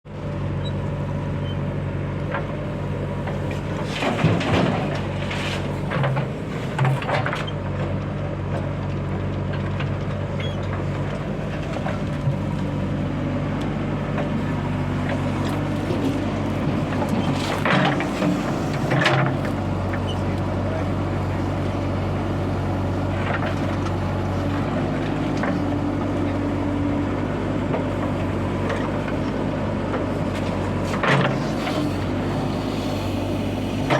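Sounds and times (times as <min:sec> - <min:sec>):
diesel engines running: 0:00.1 - 0:33.9.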